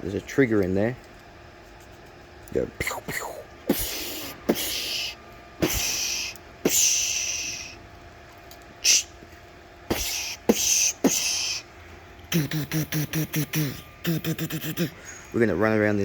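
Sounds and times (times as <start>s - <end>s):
man making mouth shooting noises: 2.8s - 7.8s, 8.8s - 9.1s, 9.9s - 11.6s, 12.3s - 15.0s.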